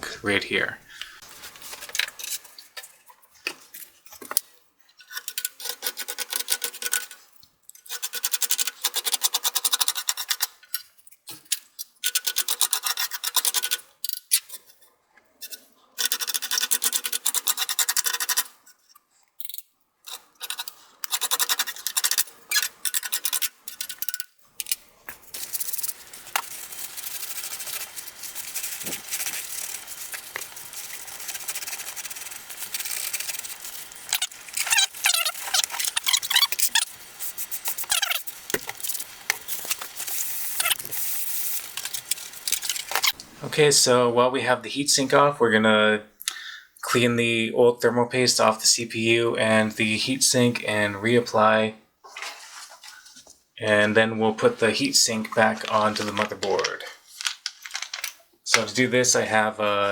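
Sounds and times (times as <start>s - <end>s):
scraping metal grill: 20.1s - 43.2s.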